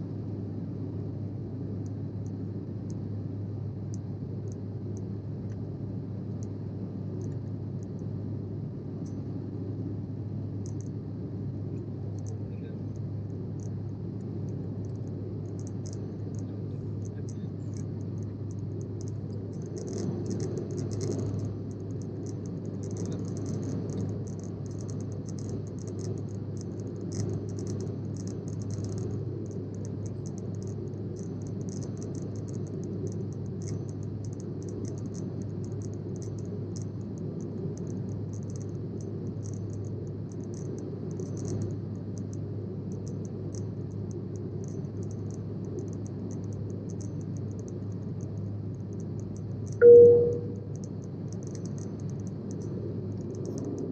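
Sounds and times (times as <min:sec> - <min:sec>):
airplane cabin engine hum: 0:00.0 - 0:53.9
short loud chime: 0:49.8 - 0:50.7.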